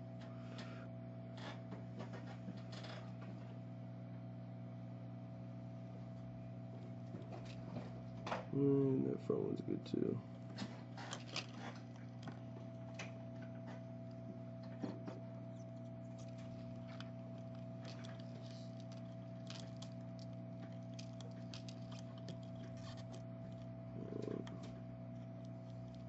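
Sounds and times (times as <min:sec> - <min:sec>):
steady electrical hum: 0:00.0 - 0:26.0
desoldering ticks and scrapes: 0:09.6 - 0:26.0.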